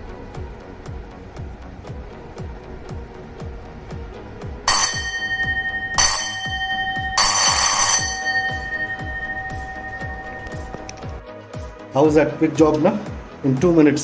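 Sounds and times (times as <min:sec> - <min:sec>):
background music with steady beat: 0:00.0 - 0:14.0
electric gong doorbell ringing: 0:04.7 - 0:11.2.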